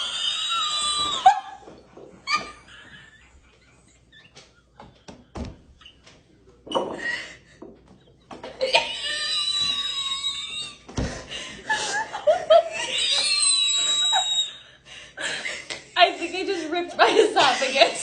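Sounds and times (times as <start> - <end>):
high-pitched scream: 0.0 - 1.4, 12.9 - 14.6.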